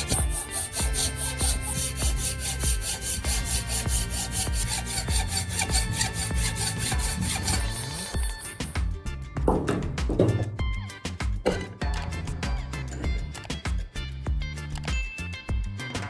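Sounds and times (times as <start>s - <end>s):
drill bit scraping on abrasive: 0.0s - 8.9s.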